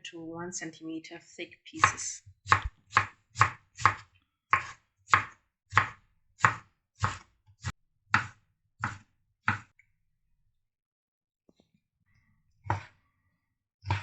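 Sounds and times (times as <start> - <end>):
knife slicing tomatoes on board: 1.8 - 9.7.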